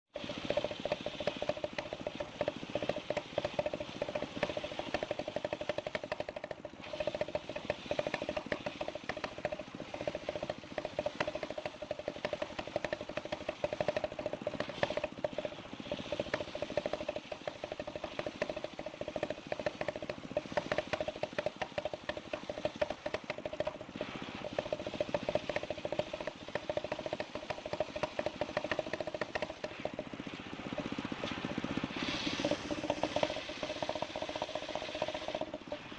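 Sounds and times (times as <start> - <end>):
sawmill saw running: 0.1 - 35.9.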